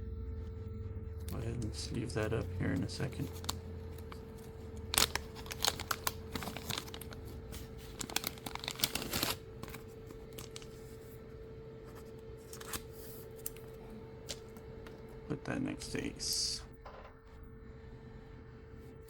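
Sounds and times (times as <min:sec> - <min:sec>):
faint steady hum: 0:00.0 - 0:19.0
trading cards rustling and clicking: 0:01.2 - 0:11.2, 0:11.9 - 0:15.1.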